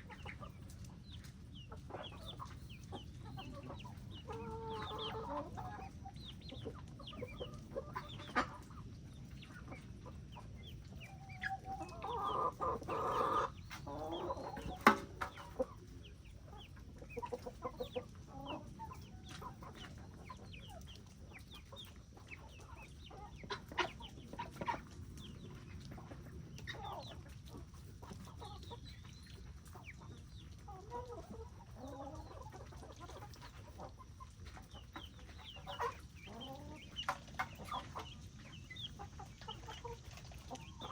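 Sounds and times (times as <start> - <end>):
chickens clucking: 0.0 - 40.9.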